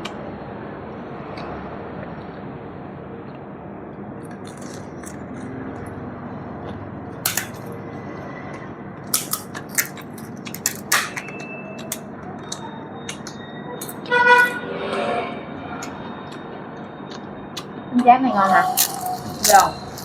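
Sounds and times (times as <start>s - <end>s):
rice crackers crunching: 4.3s - 5.5s, 9.1s - 11.1s, 18.6s - 20.0s.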